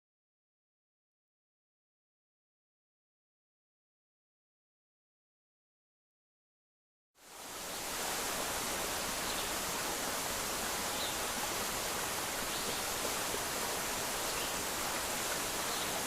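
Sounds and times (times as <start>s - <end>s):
steady hiss: 7.2s - 16.0s.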